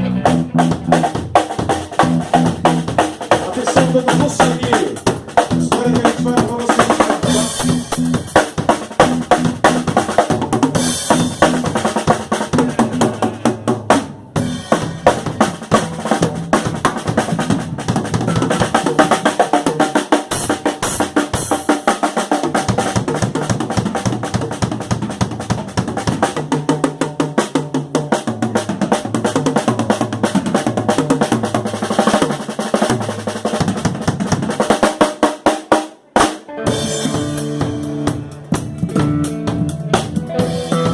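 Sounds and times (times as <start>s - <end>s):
electric bass: 0.0s - 18.9s, 36.5s - 40.9s
drum kit with snare rolls: 0.0s - 40.9s.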